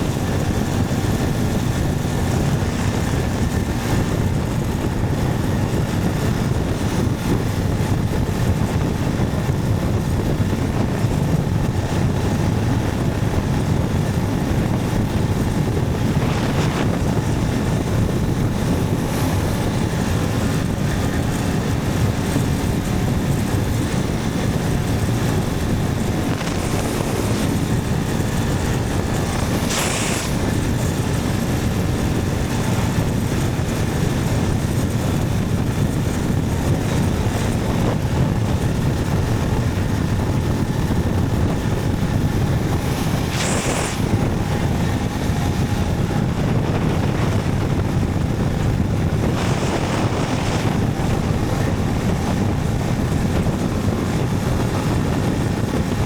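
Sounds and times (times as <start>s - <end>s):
motorcycle engine running: 0.0s - 56.0s
wind noise: 0.0s - 56.0s
short hisses: 29.2s - 30.7s, 43.2s - 44.2s.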